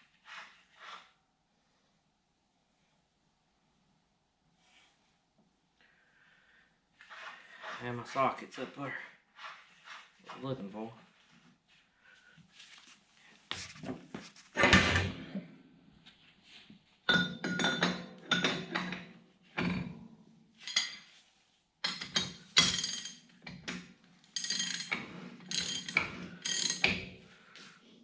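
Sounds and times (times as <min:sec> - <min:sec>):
metal tools clinking: 0:20.6 - 0:21.1, 0:21.8 - 0:23.3, 0:24.3 - 0:27.0.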